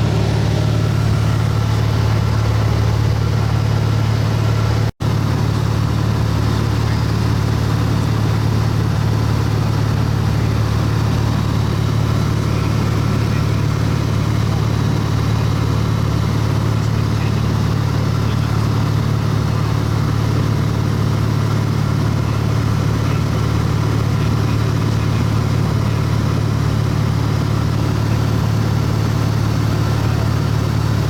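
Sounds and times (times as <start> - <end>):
small plane engine droning: 0.0 - 31.0.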